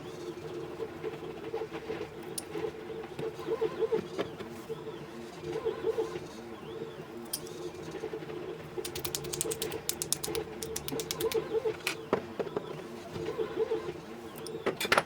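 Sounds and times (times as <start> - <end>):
sharp mechanical clicks: 8.8 - 11.5
steady hum: 8.8 - 11.6.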